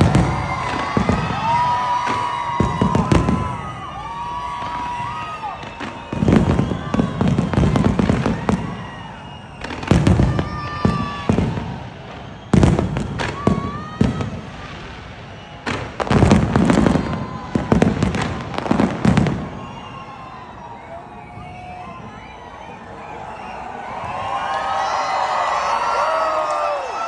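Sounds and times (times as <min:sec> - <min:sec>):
fireworks banging: 0:00.0 - 0:20.2.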